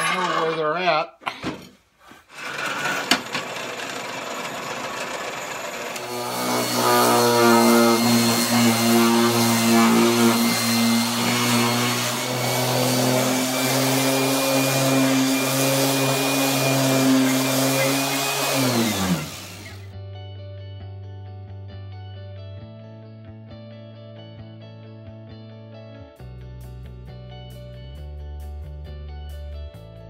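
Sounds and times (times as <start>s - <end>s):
electric power tool motor running: 2.4s - 19.9s.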